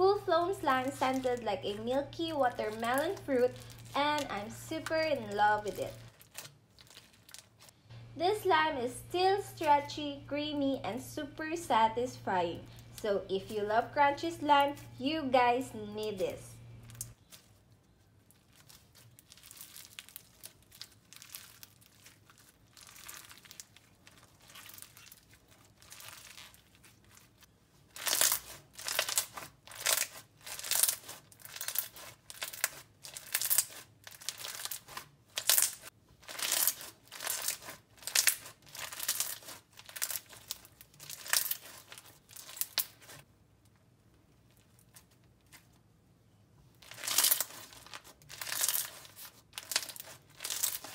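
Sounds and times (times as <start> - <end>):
crunchy slime squeezed by hand: 18.2 - 43.2, 46.8 - 50.9.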